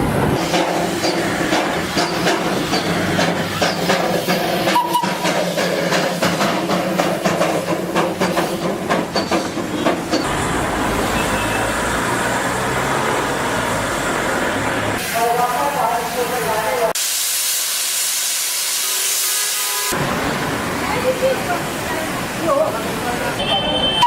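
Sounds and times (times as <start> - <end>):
train wheels clattering on rails: 0.1 - 13.3.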